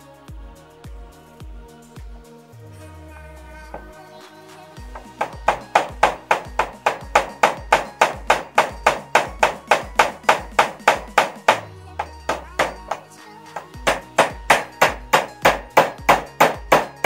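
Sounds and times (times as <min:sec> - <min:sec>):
background music with bass line: 0:00.0 - 0:17.0
rapid hammer strikes: 0:04.9 - 0:17.0.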